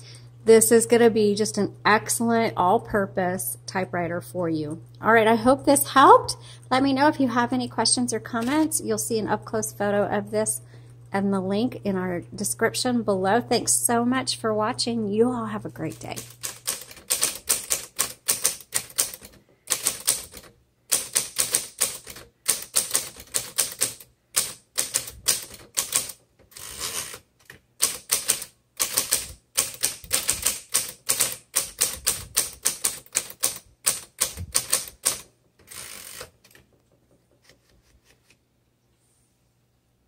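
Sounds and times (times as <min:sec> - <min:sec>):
steady low hum: 0:00.0 - 0:21.2
electric typewriter key strikes: 0:16.2 - 0:26.2, 0:26.9 - 0:36.7.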